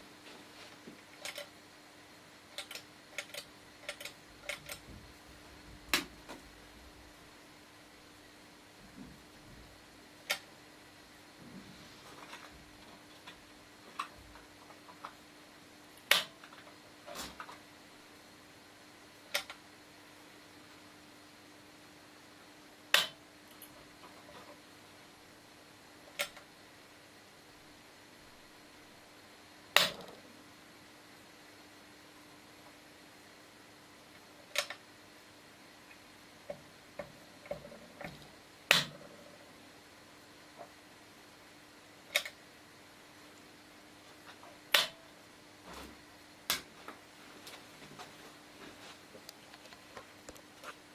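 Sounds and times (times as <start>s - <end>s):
faint steady hum: 0.0s - 50.9s
toggle switch clicks: 16.0s - 16.4s, 22.9s - 23.2s, 44.7s - 45.0s.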